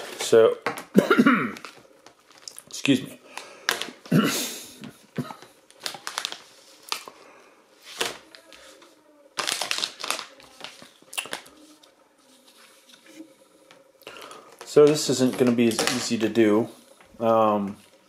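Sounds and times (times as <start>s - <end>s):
plastic packaging crinkling: 1.6s - 4.1s, 5.3s - 7.2s, 7.9s - 13.3s.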